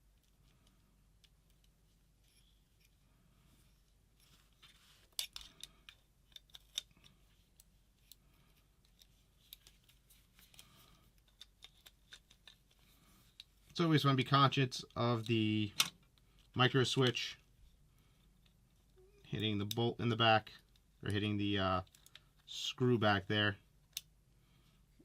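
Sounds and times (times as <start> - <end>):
small parts clicking and tapping: 4.2 - 13.8, 18.2 - 22.6.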